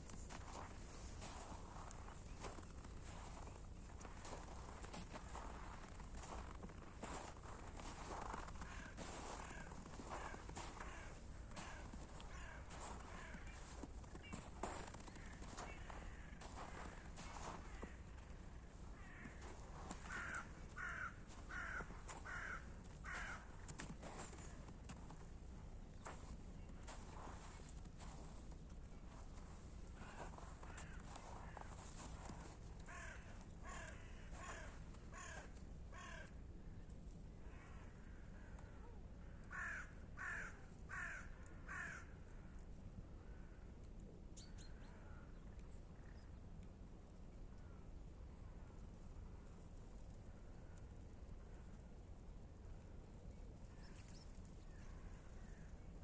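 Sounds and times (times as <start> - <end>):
faint footsteps: 0.0 - 35.6
crow cawing: 0.3 - 25.2, 26.0 - 28.5, 29.1 - 36.4, 37.4 - 42.6, 54.7 - 55.8.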